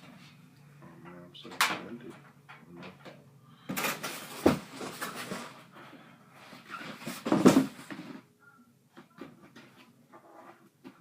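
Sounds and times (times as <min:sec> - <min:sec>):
computer case parts rustling and clattering: 0:01.6 - 0:05.7, 0:06.4 - 0:08.3.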